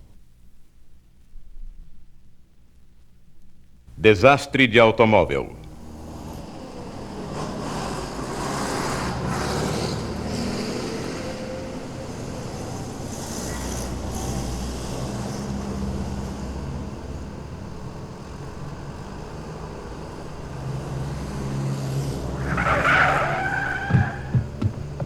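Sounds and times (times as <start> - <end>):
tyres screeching: 22.0 - 25.0
car engine running: 22.2 - 25.0
car crash impacts: 22.3 - 25.0.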